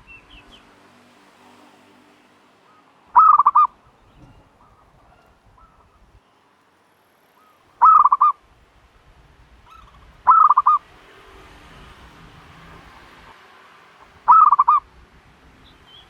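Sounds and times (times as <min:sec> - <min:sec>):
turtle dove calling: 0:02.6 - 0:06.3, 0:07.4 - 0:08.5, 0:09.6 - 0:10.9, 0:14.0 - 0:14.9.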